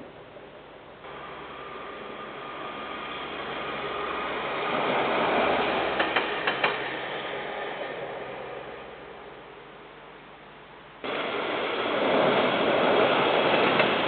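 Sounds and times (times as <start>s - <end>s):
train rumbling past: 1.0s - 10.0s, 11.0s - 14.0s
sharp clacks of train wheels: 1.1s - 8.5s, 11.0s - 14.0s.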